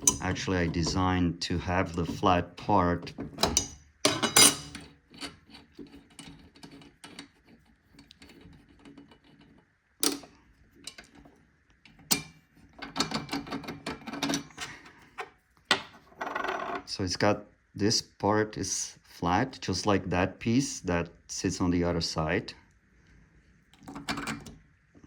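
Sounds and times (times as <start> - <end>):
metal saw parts clicking: 0.0 - 1.0.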